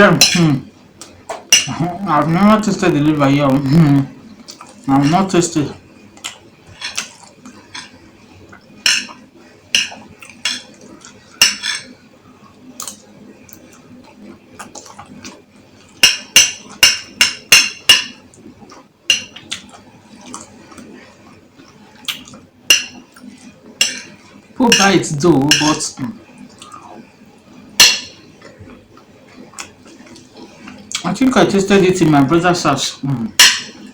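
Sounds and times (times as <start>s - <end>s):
cutlery clinking against a bowl: 0.2s - 0.6s, 1.3s - 1.8s, 4.5s - 5.4s, 6.2s - 8.0s, 8.8s - 12.0s, 14.6s - 18.3s, 19.1s - 20.9s, 22.1s - 26.0s, 27.8s - 28.5s, 33.4s - 33.9s.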